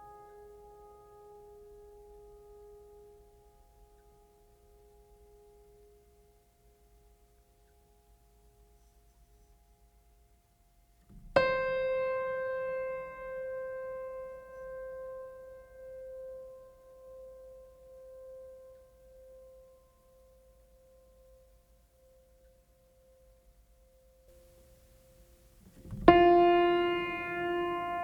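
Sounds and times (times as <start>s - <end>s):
sustained ringing musical note: 26.0s - 28.0s.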